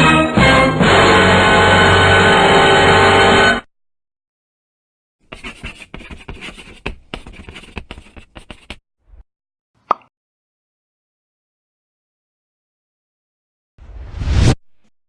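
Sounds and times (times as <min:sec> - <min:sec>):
music: 0:00.0 - 0:03.7
rapid irregular scratching: 0:05.3 - 0:08.8.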